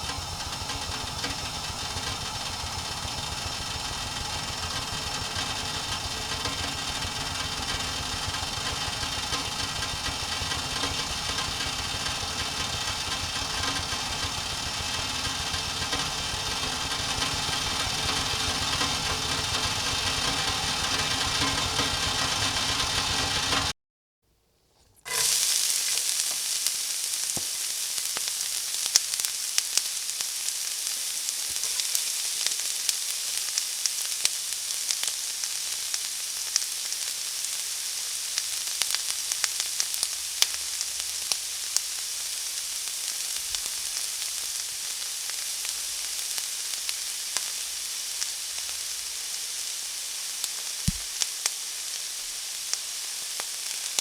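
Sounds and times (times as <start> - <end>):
food sizzling in hot oil: 0.0 - 23.7, 25.1 - 54.0
machine humming: 0.0 - 23.7.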